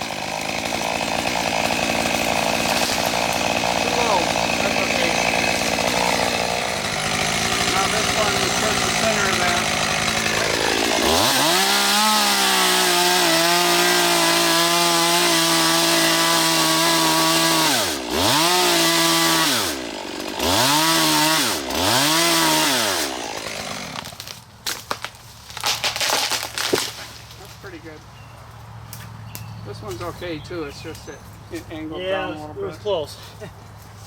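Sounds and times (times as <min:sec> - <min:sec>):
wood cracking and snapping: 0:00.0 - 0:09.0, 0:09.6 - 0:15.9, 0:23.2 - 0:27.6
chainsaw revving and cutting: 0:00.0 - 0:24.4, 0:25.6 - 0:27.8.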